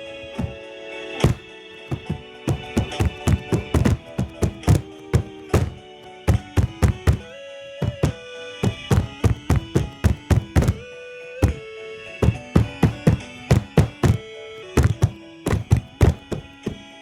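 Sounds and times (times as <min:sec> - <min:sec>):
table-bang rhythm music: 0:01.2 - 0:07.2, 0:07.8 - 0:10.8, 0:12.2 - 0:14.2.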